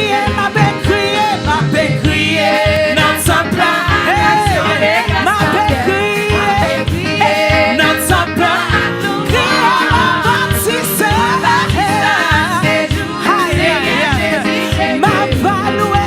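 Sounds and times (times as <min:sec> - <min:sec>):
gospel singing over a band: 0:00.0 - 0:16.0.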